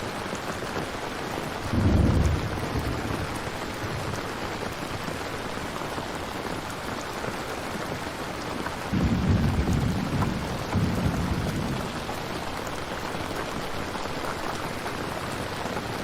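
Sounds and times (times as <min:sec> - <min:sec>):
steady rain falling: 0:00.0 - 0:16.0
thunder rumble: 0:01.6 - 0:04.7, 0:08.9 - 0:14.0.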